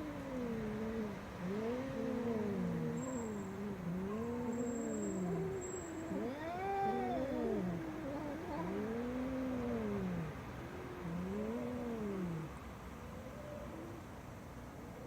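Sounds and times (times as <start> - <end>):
cat meowing: 5.2 - 9.2.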